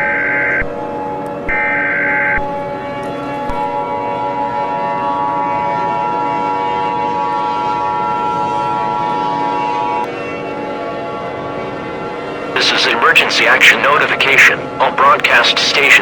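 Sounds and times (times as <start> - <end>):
drone of held tones: 0.0 - 16.0.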